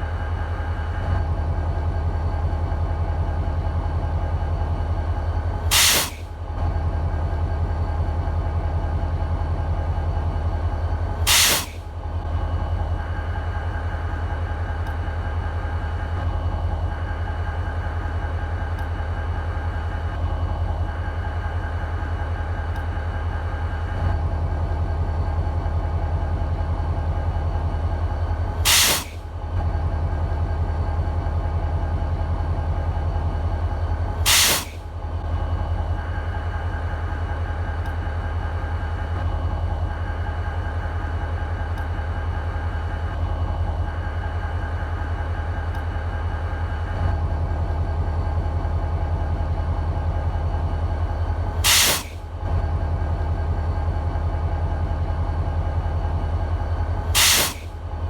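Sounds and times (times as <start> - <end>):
diesel locomotive idling: 0.0 - 58.0
short hissing bursts: 11.3 - 11.8, 28.7 - 29.2, 34.3 - 34.8, 51.6 - 52.2, 57.2 - 57.7.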